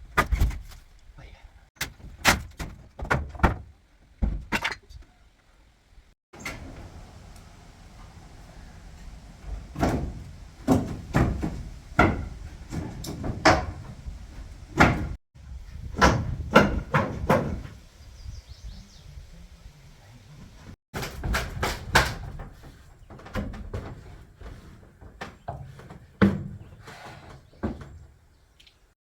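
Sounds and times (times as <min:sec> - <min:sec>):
heavy knocks on wood: 0:09.8 - 0:14.1, 0:14.7 - 0:15.2, 0:16.0 - 0:17.8.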